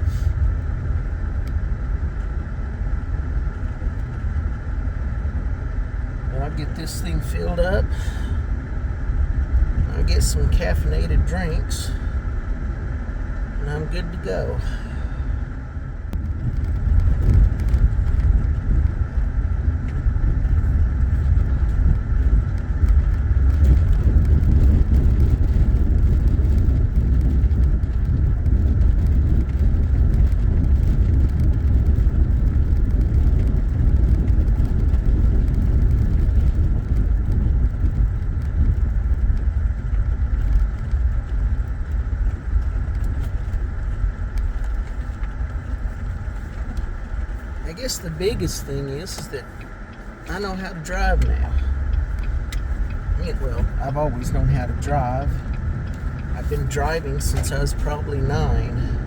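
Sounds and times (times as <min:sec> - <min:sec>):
car road rumble: 0:00.0 - 0:59.0
faint clicks and rattles: 0:16.1 - 0:48.4, 0:49.1 - 0:58.9.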